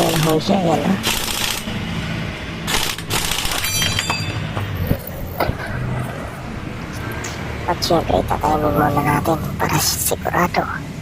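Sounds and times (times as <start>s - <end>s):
impact wrench hammering: 2.7s - 4.7s.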